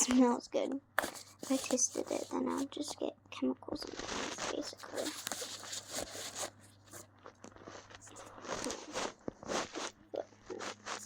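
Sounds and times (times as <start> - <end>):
crinkly rustling of objects handled: 0.0 - 11.0.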